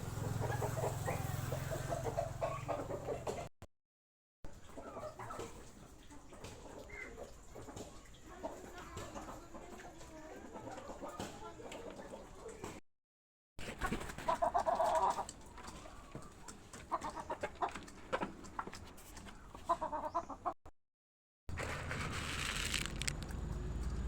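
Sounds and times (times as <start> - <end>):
chickens clucking: 0.0 - 3.5, 4.5 - 12.8, 13.6 - 20.6.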